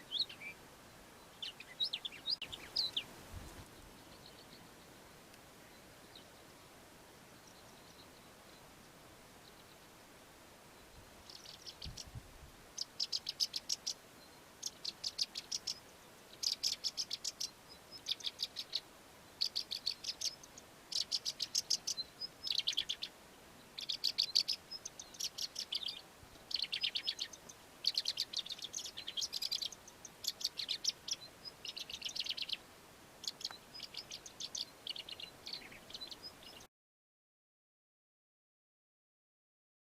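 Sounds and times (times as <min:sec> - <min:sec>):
lark singing: 0:12.8 - 0:18.8, 0:19.4 - 0:32.6, 0:33.2 - 0:36.7.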